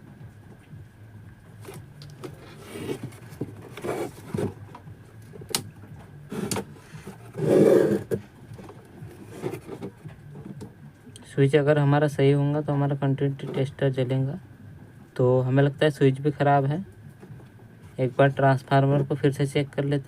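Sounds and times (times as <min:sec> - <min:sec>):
handling scrapes: 0:01.6 - 0:04.7, 0:06.3 - 0:10.0.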